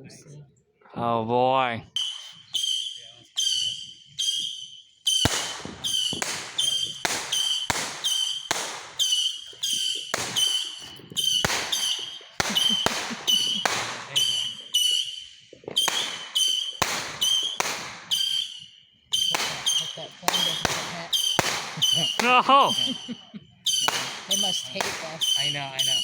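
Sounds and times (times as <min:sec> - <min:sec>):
high ringing tone: 0:01.9 - 0:05.2, 0:09.0 - 0:12.4
fireworks bangs: 0:01.9 - 0:26.0.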